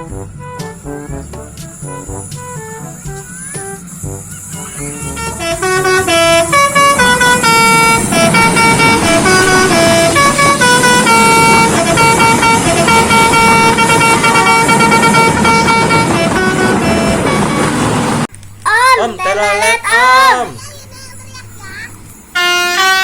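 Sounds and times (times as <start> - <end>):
musical air horn playing a tune: 0.0 - 18.3, 22.4 - 23.0
steady rushing noise: 0.0 - 18.3.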